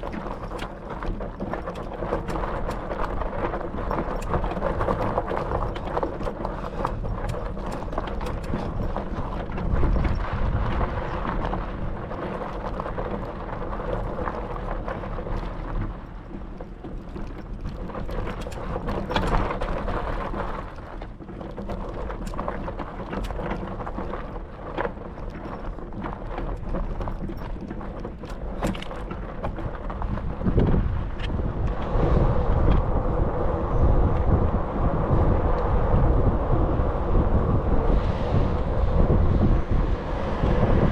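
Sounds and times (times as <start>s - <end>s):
rattles and knocks: 0.0s - 31.8s
wind buffeting microphone: 0.0s - 40.9s.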